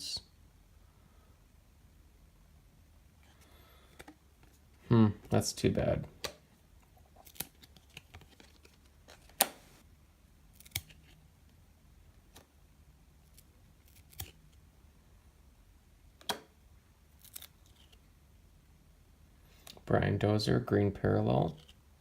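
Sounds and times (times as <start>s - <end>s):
trading cards clicking and snapping: 7.2s - 9.6s.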